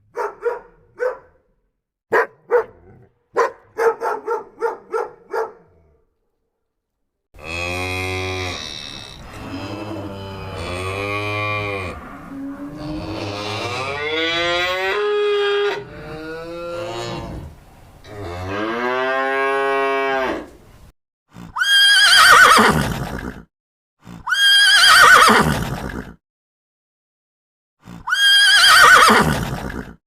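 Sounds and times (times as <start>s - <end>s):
horse neighing: 7.4s - 16.2s, 21.4s - 23.4s, 24.2s - 26.2s, 28.0s - 30.0s
cow mooing: 7.4s - 20.5s.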